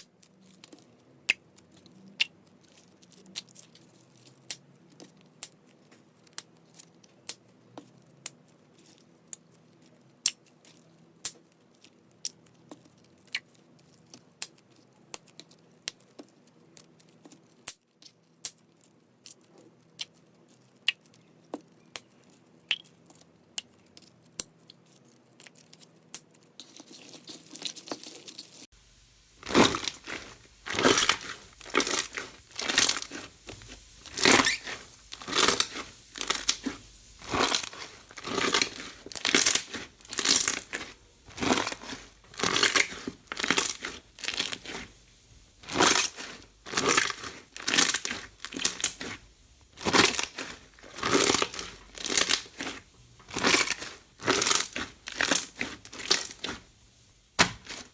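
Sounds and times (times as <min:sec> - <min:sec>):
faint clicks of slime: 0:00.0 - 0:02.5
loud slime squeezes: 0:29.4 - 0:45.0, 0:45.6 - 0:56.7.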